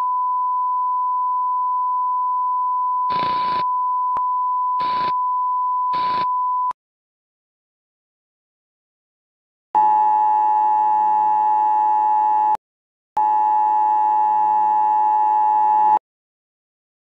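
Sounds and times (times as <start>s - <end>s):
emergency broadcast tones: 3.1s - 4.1s, 4.8s - 5.2s, 5.9s - 6.8s.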